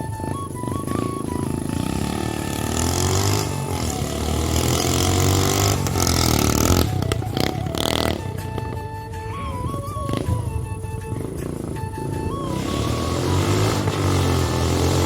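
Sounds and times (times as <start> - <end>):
motorcycle engine revving: 0.0 - 15.0.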